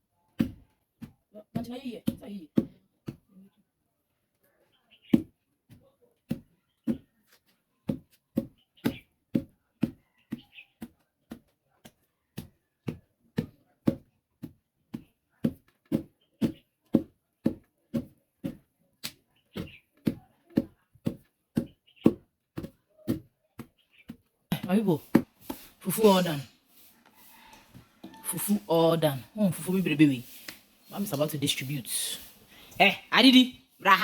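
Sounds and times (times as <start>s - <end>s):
pestle thudding in a mortar: 0.4s - 3.3s, 7.8s - 26.3s.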